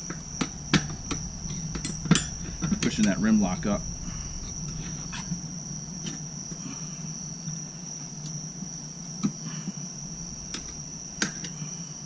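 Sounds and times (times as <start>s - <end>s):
crickets trilling: 0.0s - 12.0s
low even hum: 0.0s - 12.0s.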